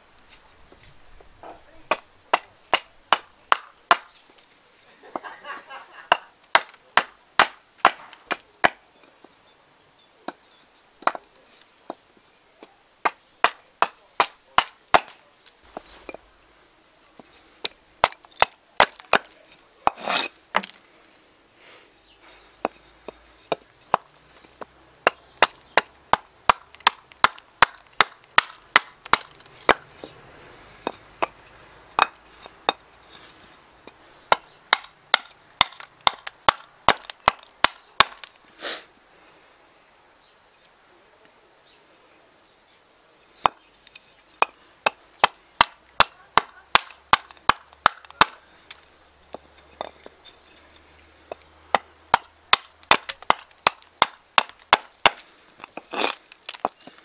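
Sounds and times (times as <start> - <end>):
axe chopping wood: 1.4 - 4.2, 6.1 - 8.8, 11.0 - 11.3, 12.6 - 15.2, 17.2 - 20.8, 23.5 - 24.2, 25.0 - 30.1, 30.8 - 32.8, 33.9 - 38.3, 44.4 - 50.0, 51.3 - 57.0.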